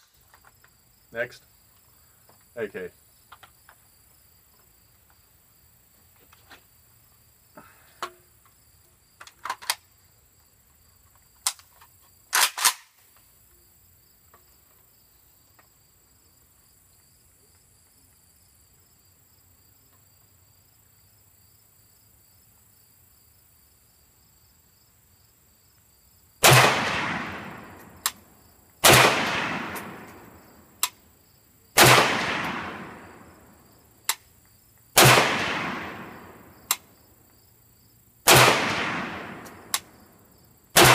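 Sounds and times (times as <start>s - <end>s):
rifle shots with echo: 26.4s - 28.1s, 28.8s - 30.4s, 31.8s - 33.3s, 35.0s - 36.5s, 38.3s - 39.9s
sharp crack: 26.4s - 28.2s, 28.8s - 31.0s, 31.8s - 33.4s, 35.0s - 36.9s, 38.3s - 40.0s.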